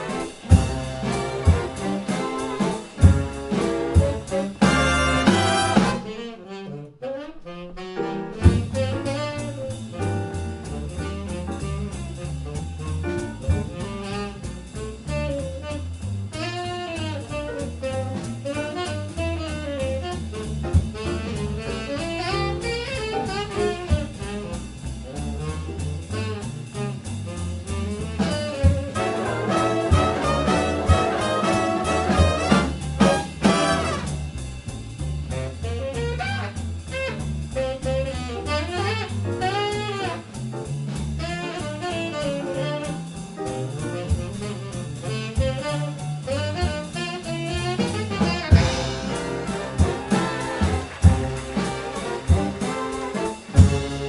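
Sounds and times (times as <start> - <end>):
bass and drums: 0.0 - 6.9, 7.8 - 54.0
swing big band playing: 0.0 - 54.0
saxophone solo: 3.6 - 10.1, 13.7 - 14.5, 15.1 - 24.7, 26.2 - 34.2, 35.6 - 40.4, 41.2 - 43.1, 44.0 - 54.0.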